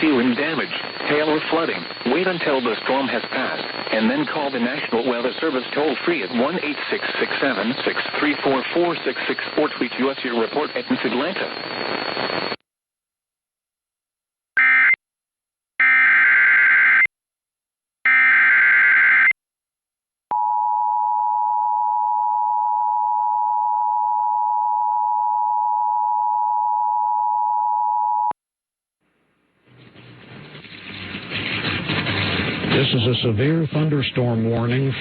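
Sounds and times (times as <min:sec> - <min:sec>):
digital data tone bursts: 0:00.0 - 0:12.5.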